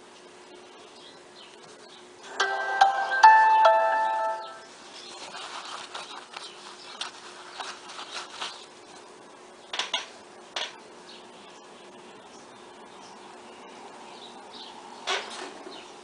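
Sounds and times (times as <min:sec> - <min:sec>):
faint steady hum: 0:00.0 - 0:15.1
soft rustling: 0:04.9 - 0:09.1.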